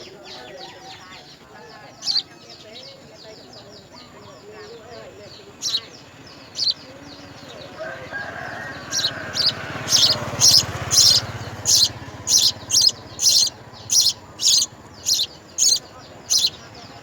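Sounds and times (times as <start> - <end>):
small bird chirping: 0.0 - 17.0
lower bird call: 4.0 - 17.0.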